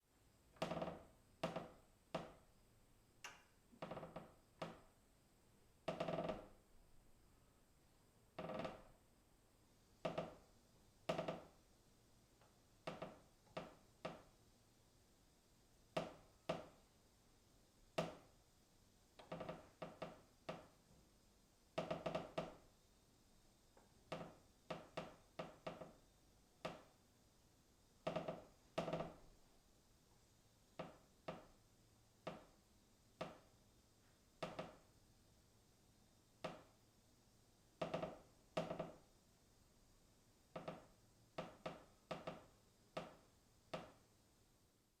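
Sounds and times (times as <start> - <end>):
distant wooden beam creaking: 0.6 - 2.4, 5.9 - 6.6, 19.2 - 20.7, 28.1 - 29.2.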